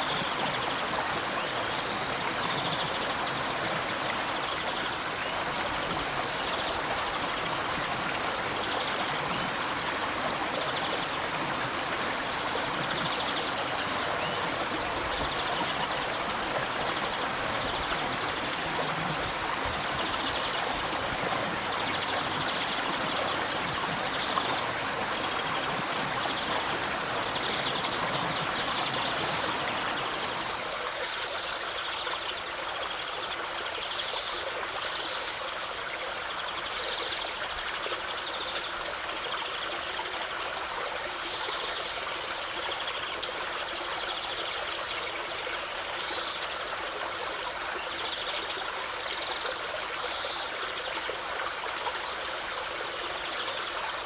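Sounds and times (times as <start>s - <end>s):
river water rushing: 0.0s - 30.7s.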